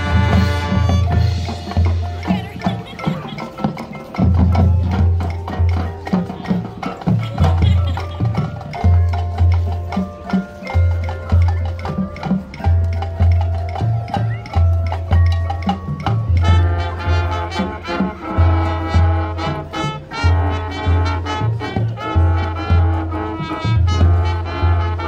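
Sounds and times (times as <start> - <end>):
marching band playing: 0.0 - 25.0
percussion strikes: 0.0 - 25.0.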